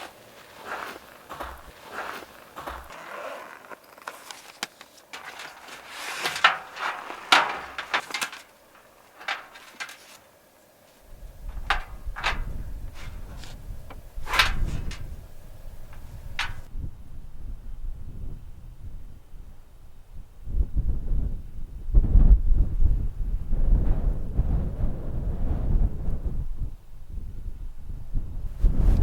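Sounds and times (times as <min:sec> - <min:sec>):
objects knocking and clicking: 0:00.0 - 0:10.3, 0:11.5 - 0:15.2, 0:15.9 - 0:16.7
wind rumble on microphone: 0:11.1 - 0:29.0.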